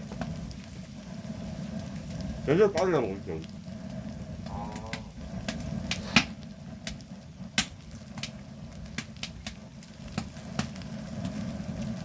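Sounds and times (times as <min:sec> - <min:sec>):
low hiss and rumble: 0:00.0 - 0:12.0
wood fire crackling and popping: 0:00.0 - 0:12.0.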